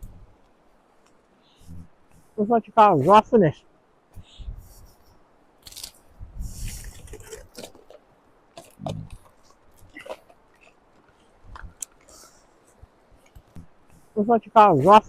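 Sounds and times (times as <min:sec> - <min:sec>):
handling clicks and rustles: 0:05.0 - 0:14.0
wind gusting on microphone: 0:06.1 - 0:07.2.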